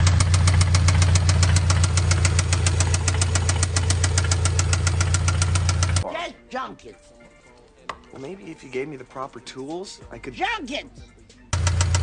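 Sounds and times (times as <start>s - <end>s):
engine knocking: 0.0s - 6.0s, 11.6s - 12.0s
low engine hum: 0.0s - 6.0s.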